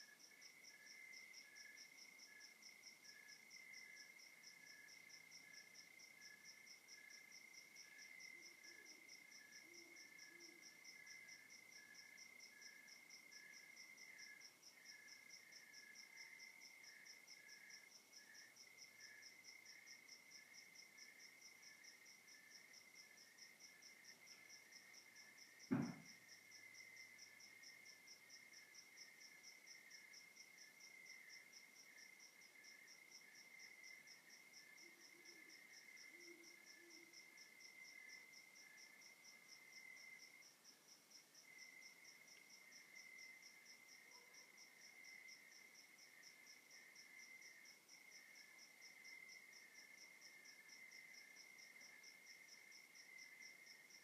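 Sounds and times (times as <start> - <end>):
sudden knock: 25.7 - 26.1.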